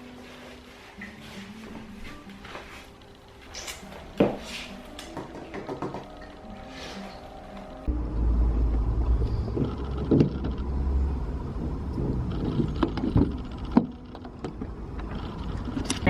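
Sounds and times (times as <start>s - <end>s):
car road rumble: 7.8s - 16.0s.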